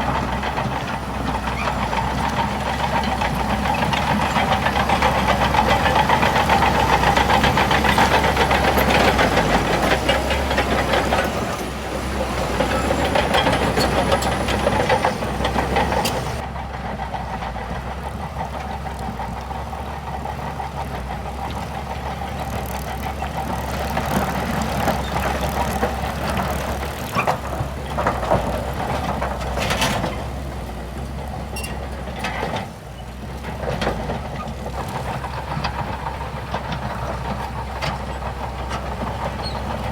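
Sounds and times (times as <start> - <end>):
diesel machinery engine running: 0.0 - 39.9
metal clanks and knocks: 0.2 - 16.4.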